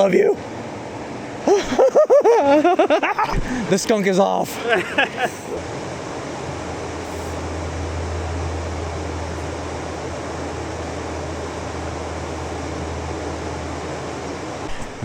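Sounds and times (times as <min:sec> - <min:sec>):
river water rushing: 0:02.4 - 0:15.0
low rumble: 0:05.6 - 0:14.8.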